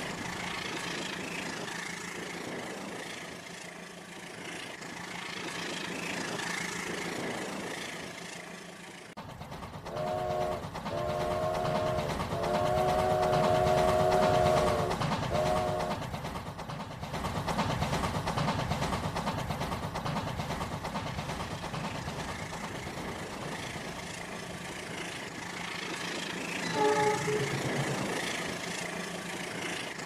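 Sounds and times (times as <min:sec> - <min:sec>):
toy train motor and wheels rattling: 0:00.0 - 0:09.1, 0:21.2 - 0:30.0
toy train electronic horn: 0:09.9 - 0:15.9, 0:26.6 - 0:27.7.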